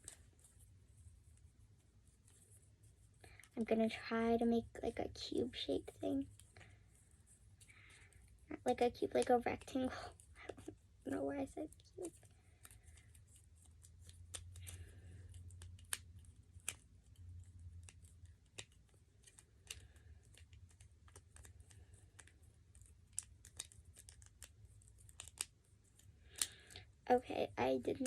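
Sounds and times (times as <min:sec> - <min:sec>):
plastic fidget toy clicking: 0:12.0 - 0:26.9.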